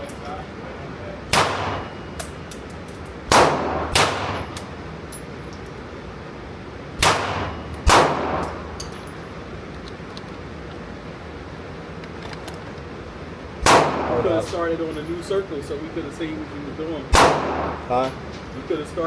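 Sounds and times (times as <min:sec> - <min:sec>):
rifle shots: 0:01.3 - 0:02.0, 0:03.3 - 0:04.6, 0:07.0 - 0:08.7, 0:13.6 - 0:14.4, 0:17.1 - 0:17.9.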